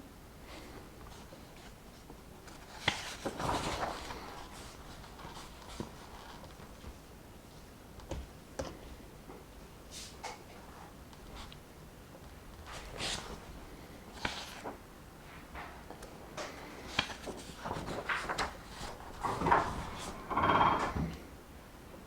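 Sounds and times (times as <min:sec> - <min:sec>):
book page rustling: 0:02.5 - 0:07.0, 0:12.5 - 0:14.8, 0:15.6 - 0:20.6.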